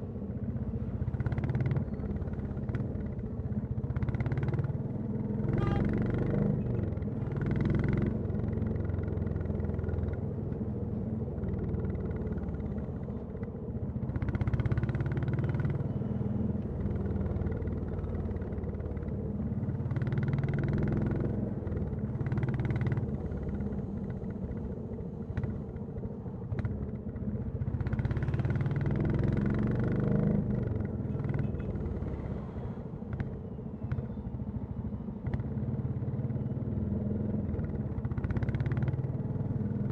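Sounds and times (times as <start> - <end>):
motorcycle engine rumbling: 8.0 - 39.9.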